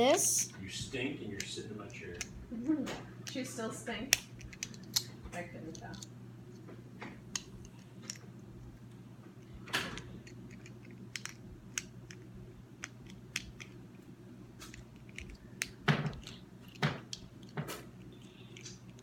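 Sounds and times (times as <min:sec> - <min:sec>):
plastic lego pieces clicking: 0:09.9 - 0:12.2.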